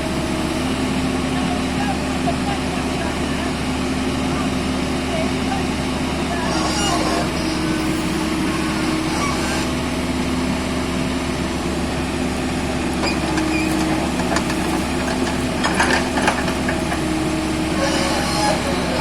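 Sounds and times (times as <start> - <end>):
diesel engine running under load: 0.0 - 19.0.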